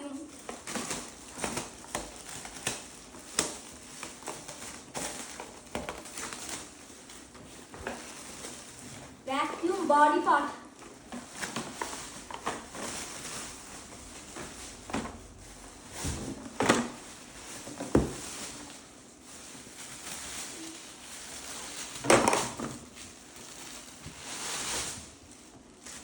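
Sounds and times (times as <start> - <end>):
packaging rustling and crinkling: 0.1 - 26.0
sharp crackles and knocks: 0.4 - 9.7, 10.8 - 26.0.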